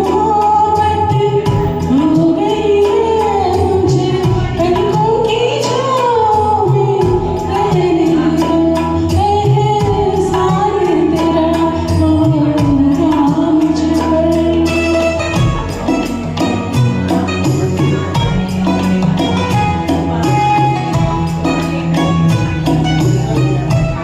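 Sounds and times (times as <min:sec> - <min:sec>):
woman singing: 0:00.0 - 0:15.4
backing track with steady beat: 0:00.0 - 0:24.0.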